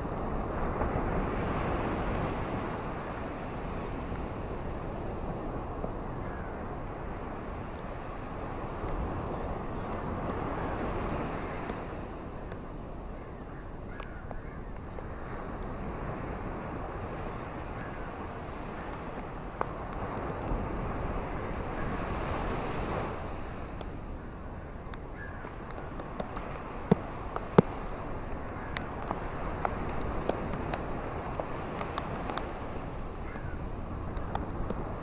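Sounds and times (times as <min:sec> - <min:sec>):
wind buffeting microphone: 0:00.0 - 0:35.0
rain and wind rushing: 0:25.6 - 0:35.0.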